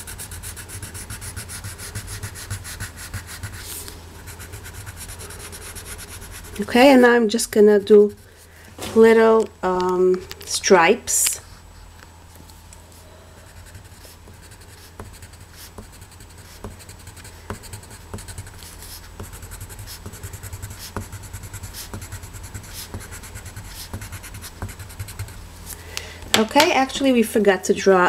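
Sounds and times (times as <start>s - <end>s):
crayon scratching on paper: 0.0s - 8.3s, 13.4s - 25.4s.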